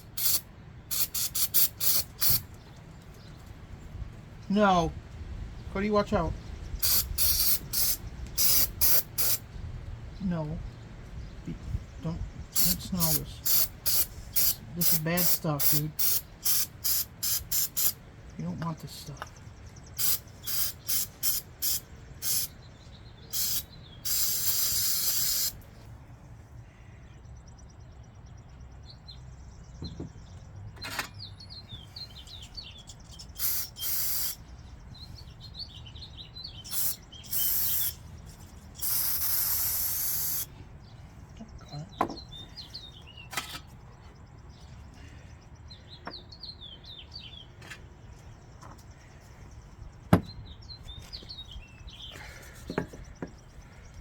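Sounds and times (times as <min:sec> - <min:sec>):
aerosol can spraying: 0:00.0 - 0:02.4, 0:06.8 - 0:09.4, 0:12.6 - 0:18.0, 0:20.0 - 0:22.5, 0:23.3 - 0:25.6, 0:33.2 - 0:34.4, 0:36.7 - 0:38.0, 0:38.8 - 0:40.5
birds chirping: 0:00.0 - 0:54.0.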